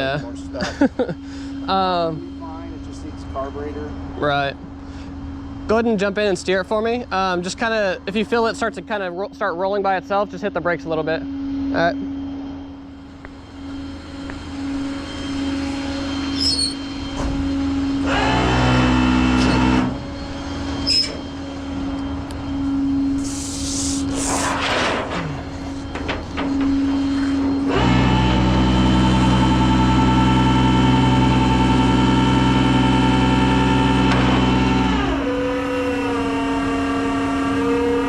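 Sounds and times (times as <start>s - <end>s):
winch hydraulics humming: 0.0s - 38.0s
truck engine running: 12.9s - 37.6s.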